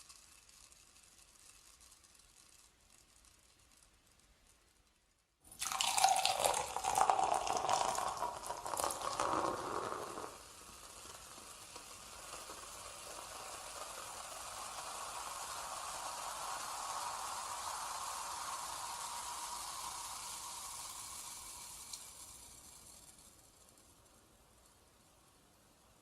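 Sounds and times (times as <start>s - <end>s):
liquid pouring into a glass: 5.5s - 14.6s.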